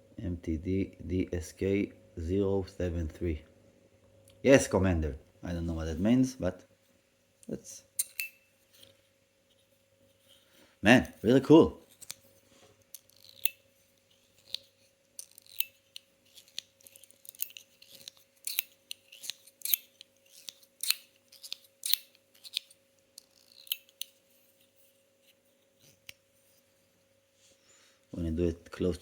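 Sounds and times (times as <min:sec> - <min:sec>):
metal fidget toy clicking: 0:12.9 - 0:13.6, 0:14.4 - 0:24.1.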